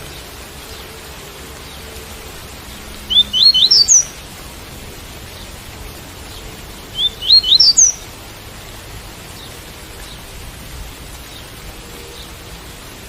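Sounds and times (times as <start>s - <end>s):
rain hiss: 0.0s - 13.0s
bird singing rising notes: 3.0s - 4.2s, 6.9s - 8.0s.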